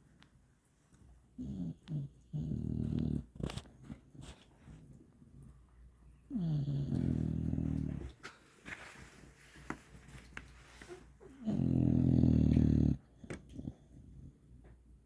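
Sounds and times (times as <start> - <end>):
dog snoring: 1.4 - 3.7, 6.3 - 8.1, 11.4 - 14.3.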